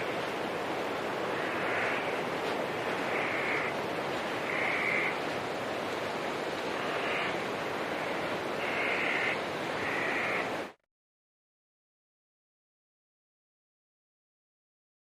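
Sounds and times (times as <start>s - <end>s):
rushing water: 0.0s - 10.8s.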